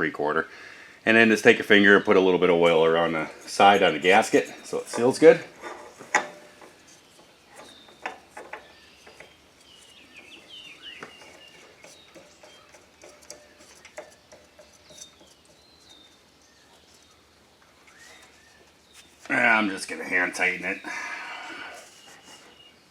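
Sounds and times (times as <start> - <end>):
small birds chirping: 0.6 - 22.9
handling clicks and knocks: 3.4 - 19.4.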